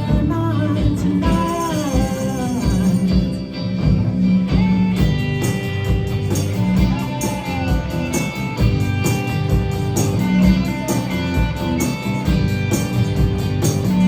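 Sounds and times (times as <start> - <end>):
bass: 0.0 - 14.0
drums steady beat: 0.0 - 14.0
electric guitars bending notes: 0.0 - 14.0.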